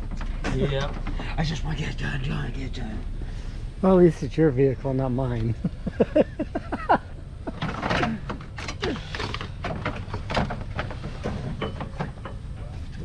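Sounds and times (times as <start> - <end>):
car parts and tools knocking: 0.0 - 1.4, 5.7 - 13.0.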